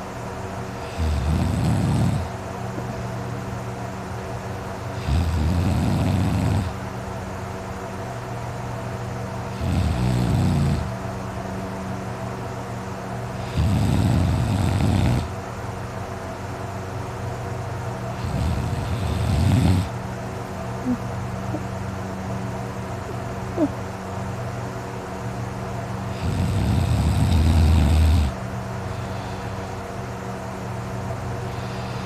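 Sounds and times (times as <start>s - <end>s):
steady background hum: 0.0s - 32.0s
man snoring: 0.8s - 2.3s, 4.9s - 6.8s, 9.5s - 10.9s, 13.4s - 15.3s, 18.1s - 20.0s, 26.1s - 29.8s, 31.5s - 32.0s.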